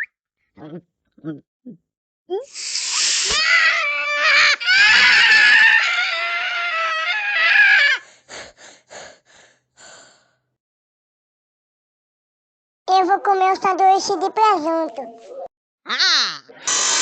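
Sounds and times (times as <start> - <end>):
person screaming in wavering wail: 3.1 - 8.0.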